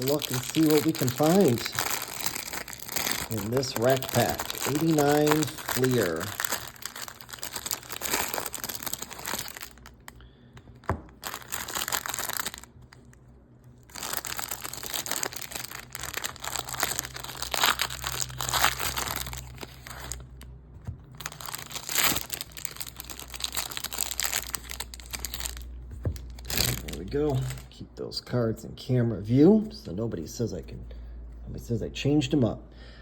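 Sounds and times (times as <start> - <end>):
wrapper crinkling and tearing: 0.0 - 10.2, 10.8 - 13.1, 13.8 - 27.8.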